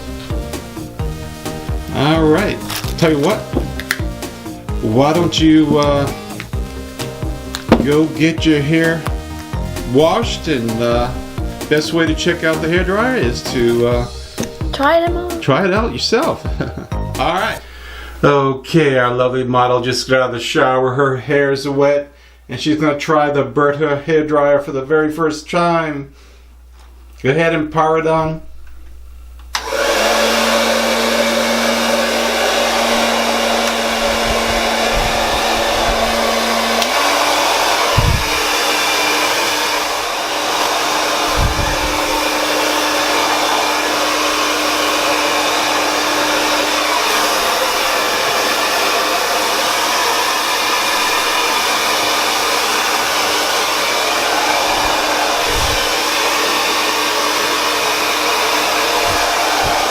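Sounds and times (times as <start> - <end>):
hair dryer blowing: 0.0 - 17.6, 29.5 - 59.9
low bumps: 37.8 - 38.5, 41.2 - 42.2.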